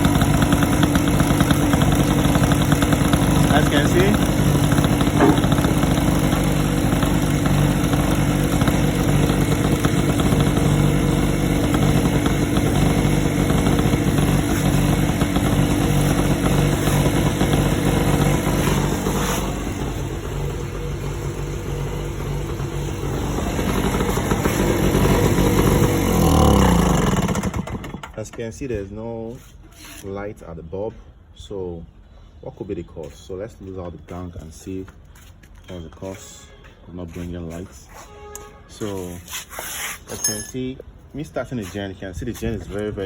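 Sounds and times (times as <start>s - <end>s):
portable generator engine running: 0.0s - 28.4s.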